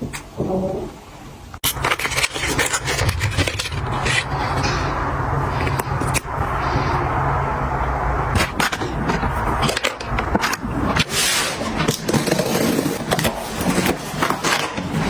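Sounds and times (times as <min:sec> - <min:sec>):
household items clicking and knocking: 0:01.6 - 0:04.7
rustling: 0:01.6 - 0:07.0.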